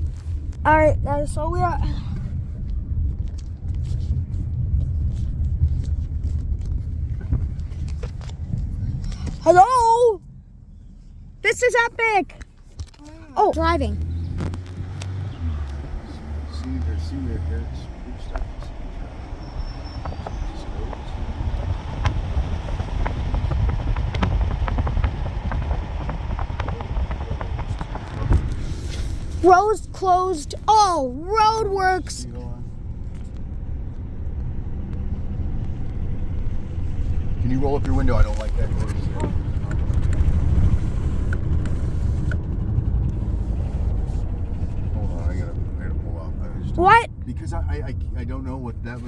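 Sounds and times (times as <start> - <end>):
wind buffeting on microphone: 0.0 - 9.4, 18.5 - 29.4
car driving road noise: 0.0 - 49.0.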